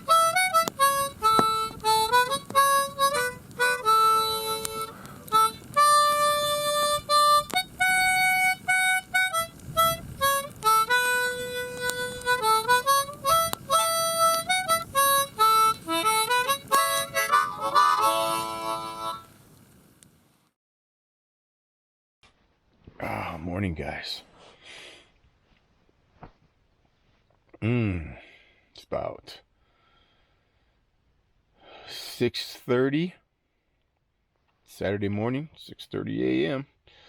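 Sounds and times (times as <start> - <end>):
harmonica playing slow melody: 0.0 - 19.3.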